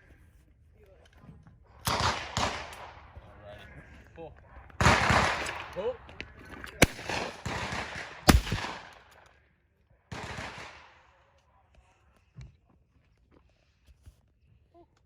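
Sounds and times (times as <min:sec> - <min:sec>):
shotgun shots with echo: 0:01.8 - 0:03.1, 0:06.8 - 0:09.1.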